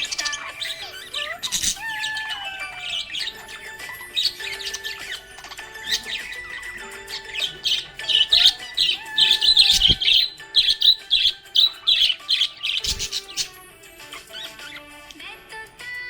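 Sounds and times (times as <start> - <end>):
budgerigar chirping: 0.0 - 15.2.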